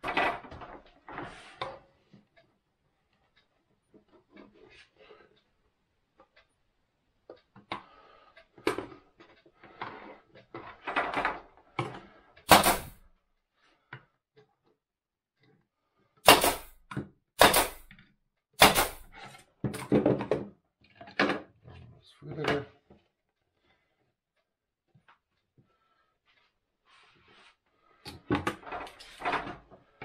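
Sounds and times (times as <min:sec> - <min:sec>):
loud sharp wooden knocks: 0:12.5 - 0:13.0, 0:16.2 - 0:18.0, 0:18.6 - 0:19.1
wooden pieces knocking on workbench: 0:19.6 - 0:20.5.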